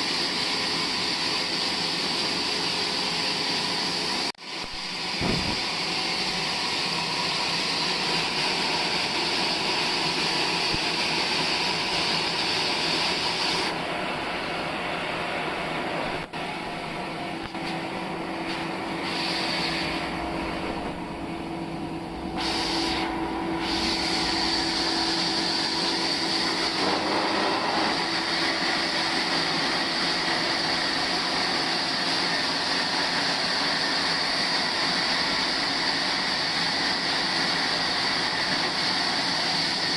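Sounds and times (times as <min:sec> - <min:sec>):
steady machine hum: 0:04.6 - 0:33.7
saw cutting log: 0:23.7 - 0:28.4.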